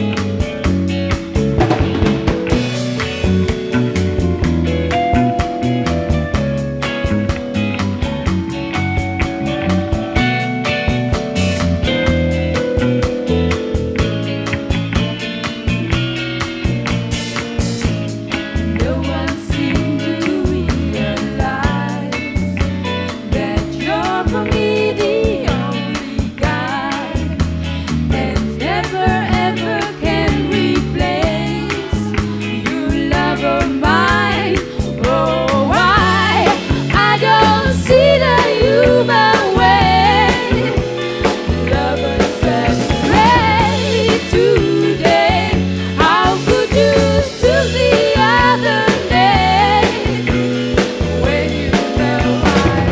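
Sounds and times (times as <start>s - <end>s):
bass guitar: 0.0s - 52.9s
drum kit: 0.0s - 52.9s
electric guitar: 0.0s - 52.9s
person singing: 18.7s - 27.4s, 28.0s - 52.9s.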